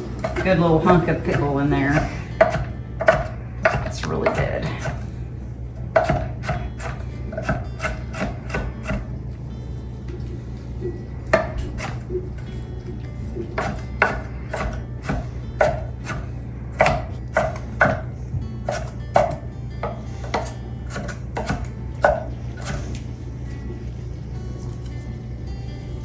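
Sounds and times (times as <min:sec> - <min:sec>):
knife chopping on cutting board: 0:00.0 - 0:05.1, 0:05.9 - 0:09.2, 0:11.3 - 0:12.3, 0:13.4 - 0:23.1.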